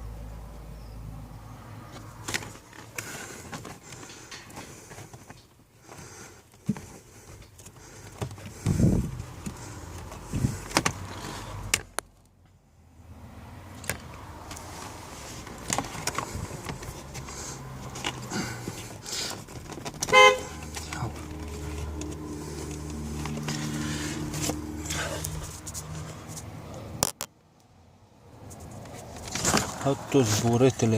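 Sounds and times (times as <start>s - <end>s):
plastic parts clicking and knocking: 2.2s - 12.1s, 15.4s - 23.7s
loud horn-like beep: 20.1s - 20.6s.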